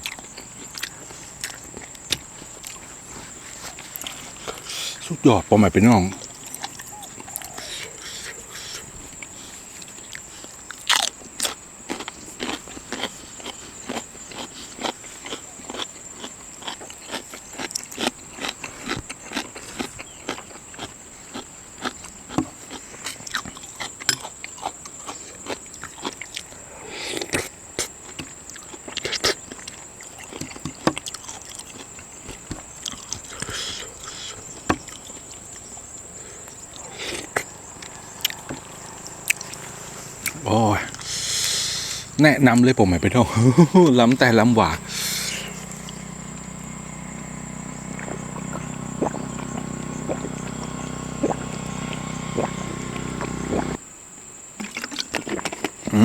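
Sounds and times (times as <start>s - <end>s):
chewing and lip smacks: 0.0s - 5.2s, 6.0s - 53.8s, 54.6s - 55.9s
steady high-pitched whine: 36.0s - 53.8s.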